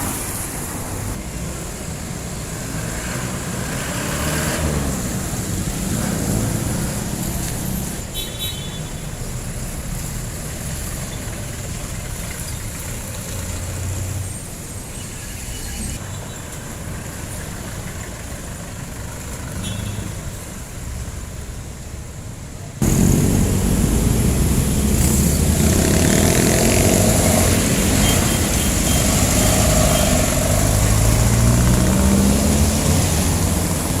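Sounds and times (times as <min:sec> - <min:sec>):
diesel engines in traffic: 0:00.0 - 0:34.0
close engine low rumble: 0:22.8 - 0:26.4.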